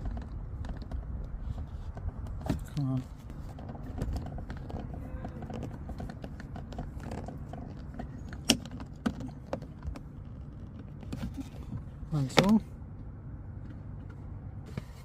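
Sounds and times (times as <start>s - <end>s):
clicks and scrapes on door handle: 0.0s - 11.8s.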